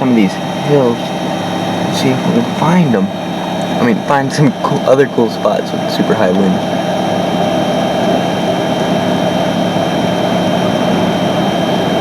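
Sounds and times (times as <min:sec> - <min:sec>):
low steady hum: 0:00.0 - 0:12.0
strong wind around vehicle: 0:00.0 - 0:12.0.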